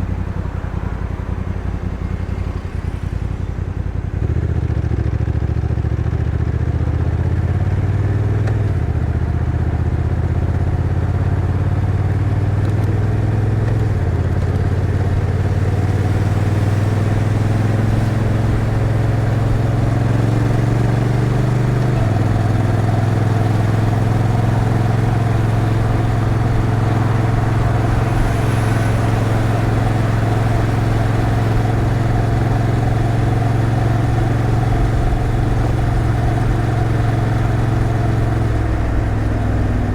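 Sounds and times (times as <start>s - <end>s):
motorcycle engine running: 0.0s - 39.9s
gear changes: 10.0s - 39.9s.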